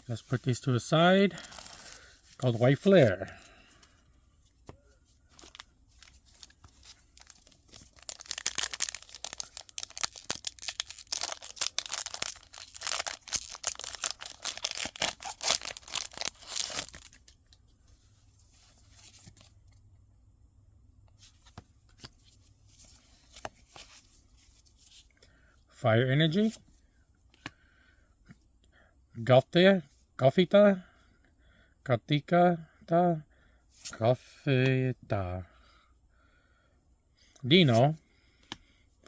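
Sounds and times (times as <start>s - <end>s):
foil wrapper tearing and crinkling: 5.5s - 17.2s.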